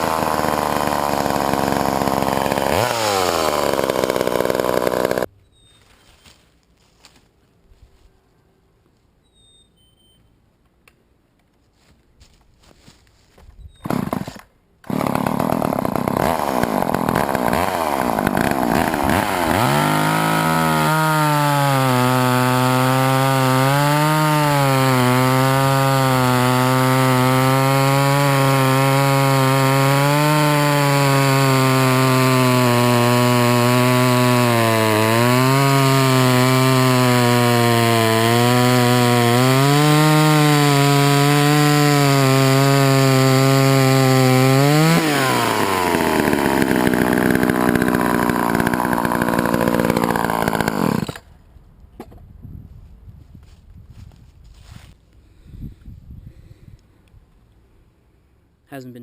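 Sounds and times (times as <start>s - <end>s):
chainsaw running at high speed: 0.0s - 5.3s, 14.9s - 51.2s.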